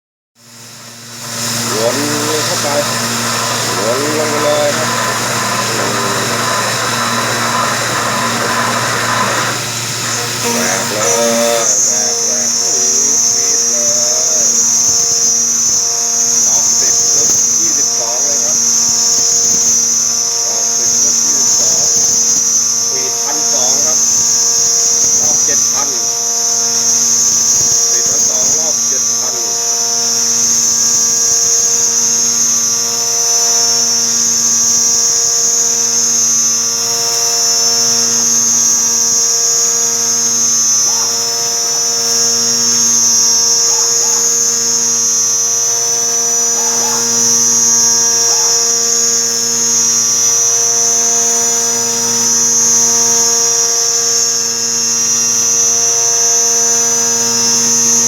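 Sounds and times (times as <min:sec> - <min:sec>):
milling machine cutting metal: 0:00.6 - 0:19.9, 0:40.7 - 0:58.0.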